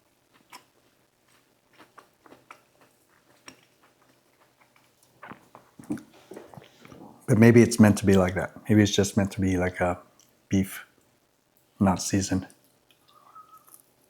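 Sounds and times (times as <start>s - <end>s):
person chewing: 0.3s - 7.3s.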